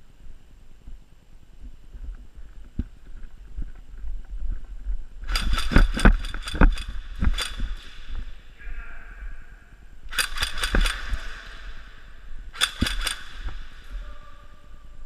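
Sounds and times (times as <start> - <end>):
low rumble: 0.0 - 15.0
airsoft guns firing: 5.3 - 8.5, 10.1 - 14.4.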